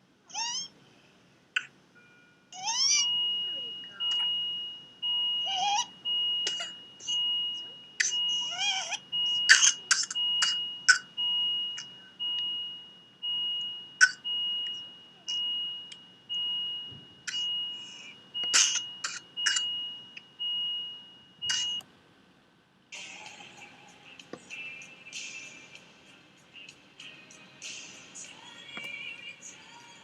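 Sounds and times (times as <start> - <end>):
medical monitor beeping: 2.0 - 21.9.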